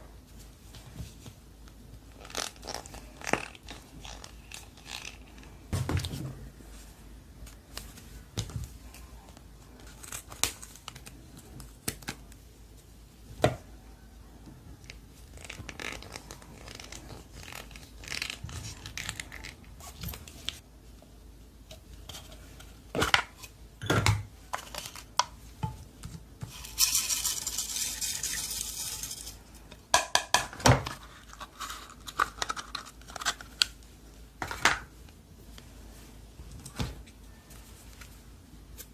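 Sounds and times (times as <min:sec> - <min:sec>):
crackly crinkling: 0:02.0 - 0:05.6, 0:14.7 - 0:20.6.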